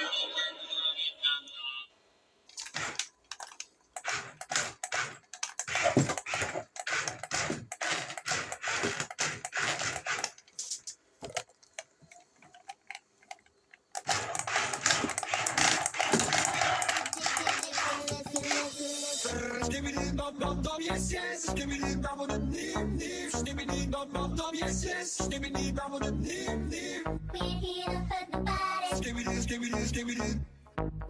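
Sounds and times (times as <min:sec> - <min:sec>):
rapid clicking and clattering: 0:02.5 - 0:18.8.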